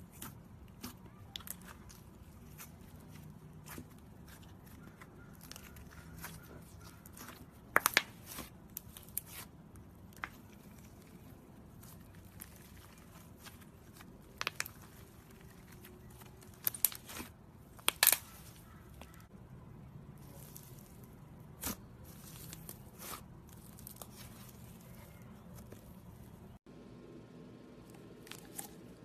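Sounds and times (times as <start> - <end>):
slime crackling and popping: 0.1 - 19.3.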